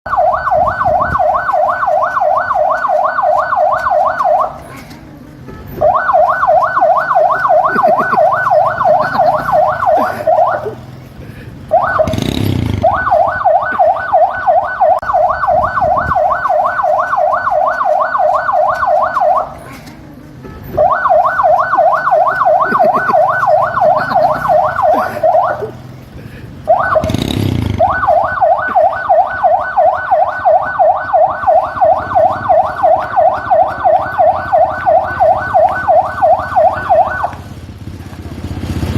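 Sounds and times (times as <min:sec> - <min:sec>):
police siren yelping: 0:00.1 - 0:05.0, 0:05.7 - 0:11.0, 0:11.6 - 0:19.9, 0:20.6 - 0:25.9, 0:26.6 - 0:37.5.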